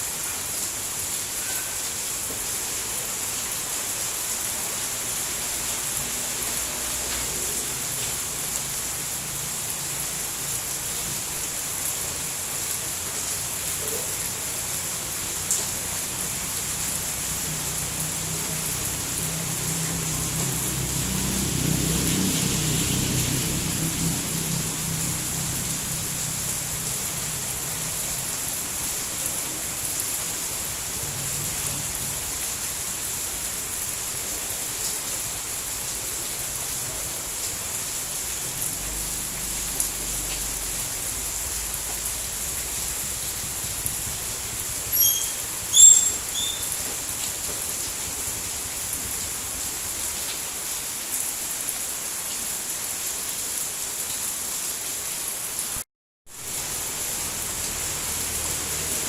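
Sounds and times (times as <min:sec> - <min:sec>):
heavy rain: 0:00.0 - 0:59.0
short high chirps: 0:44.9 - 0:46.7.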